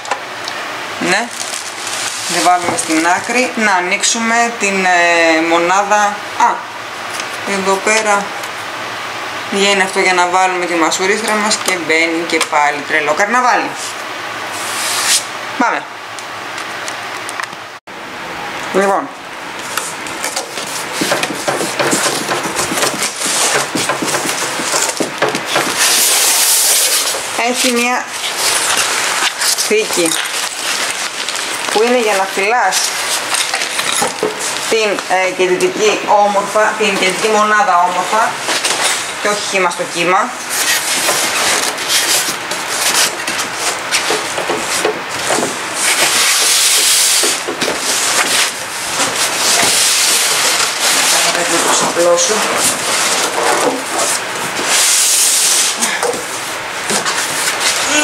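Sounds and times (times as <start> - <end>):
packaging rustling and crinkling: 1.1 - 3.6, 19.6 - 35.1, 40.5 - 58.0.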